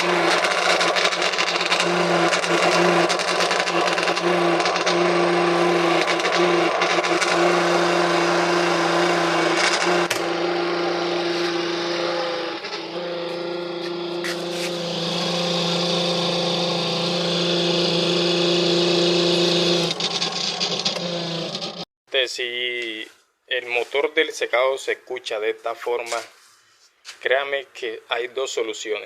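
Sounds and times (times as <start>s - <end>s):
spin-dryer motor humming: 0.0s - 21.8s.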